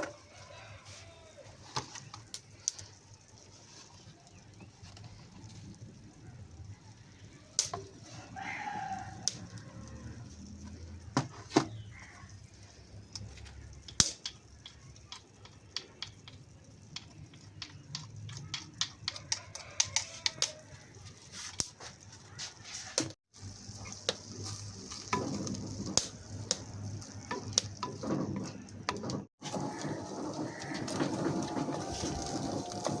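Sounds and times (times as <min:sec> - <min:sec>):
utensils clicking against cookware: 0:13.1 - 0:20.7.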